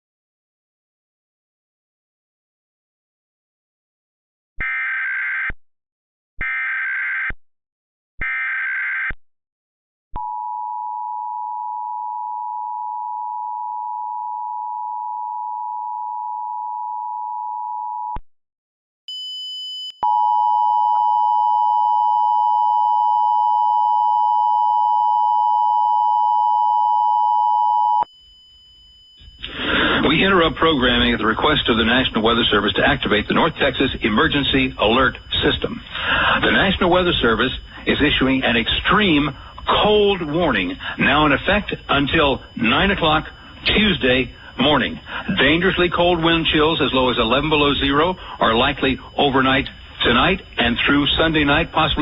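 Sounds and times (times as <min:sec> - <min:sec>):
high steady tone: 0:27.6 - 0:52.0
data burst tones: 0:29.2 - 0:52.0.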